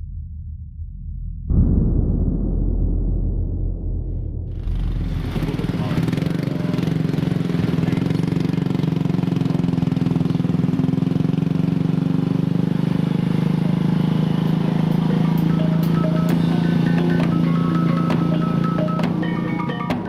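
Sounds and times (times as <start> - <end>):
small engine running: 4.8 - 20.0.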